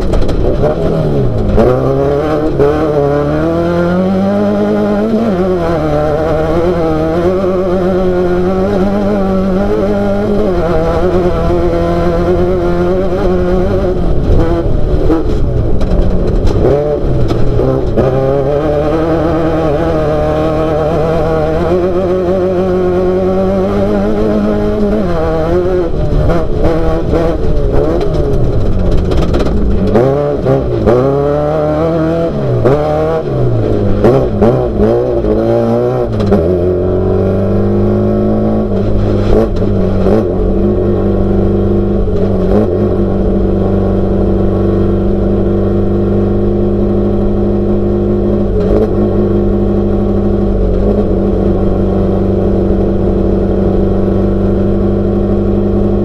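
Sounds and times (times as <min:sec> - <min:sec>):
race car engine revving: 0:00.0 - 0:56.0
knocks and rattles: 0:26.0 - 0:31.0.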